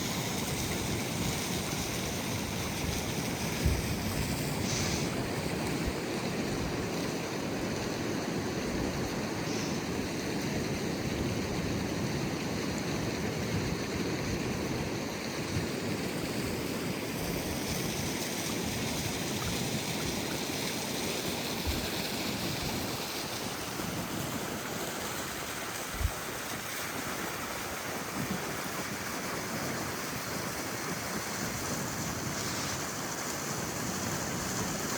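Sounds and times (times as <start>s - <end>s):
ocean surf washing on beach: 0.0s - 34.9s
wind thumps on microphone: 2.8s - 5.1s.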